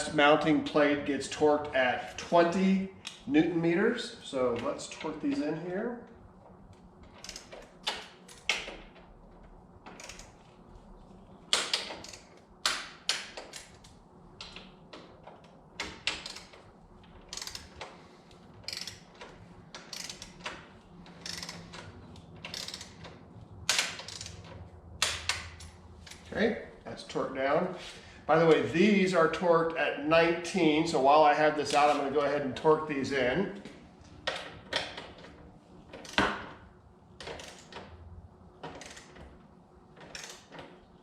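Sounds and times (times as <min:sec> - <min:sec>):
torque wrench clicking: 0:11.5 - 0:16.6, 0:17.2 - 0:18.0, 0:18.6 - 0:26.3, 0:40.0 - 0:40.7.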